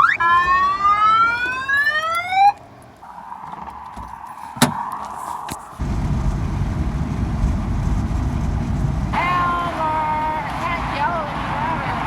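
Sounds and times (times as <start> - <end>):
car alarm whooping: 0.0 - 6.8, 9.1 - 12.0.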